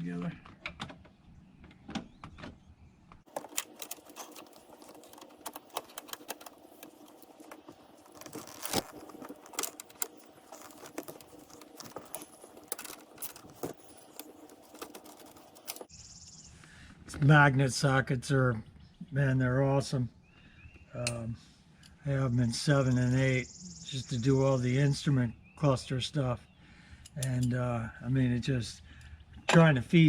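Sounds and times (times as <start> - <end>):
metal parts tapping: 3.3 - 15.9.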